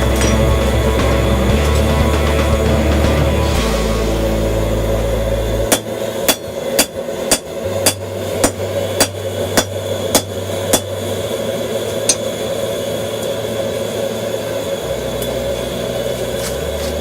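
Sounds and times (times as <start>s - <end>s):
hammer striking hot steel: 0.0s - 15.5s
propane forge roaring: 0.0s - 17.0s.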